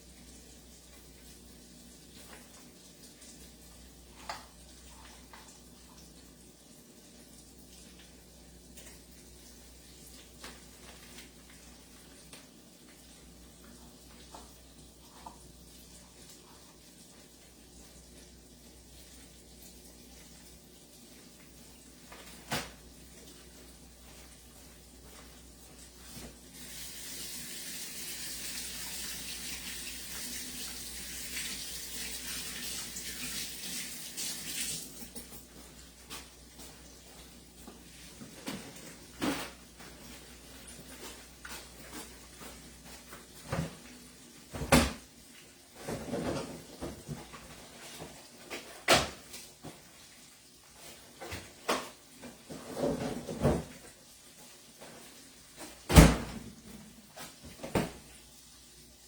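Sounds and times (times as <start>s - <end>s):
kitchen tap running: 25.5s - 47.4s.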